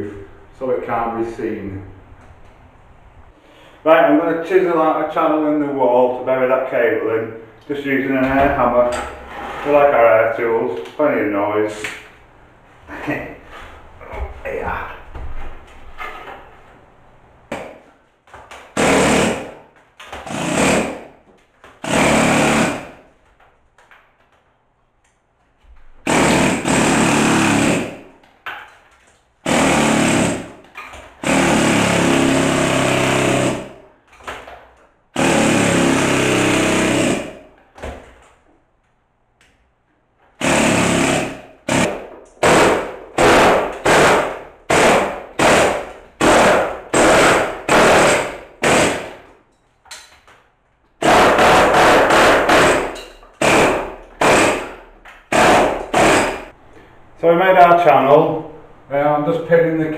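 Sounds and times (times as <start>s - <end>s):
pneumatic air hammer chiselling wall: 18.5s - 23.1s, 26.0s - 28.2s, 29.4s - 33.9s, 35.2s - 37.6s, 40.4s - 49.4s, 51.0s - 56.6s.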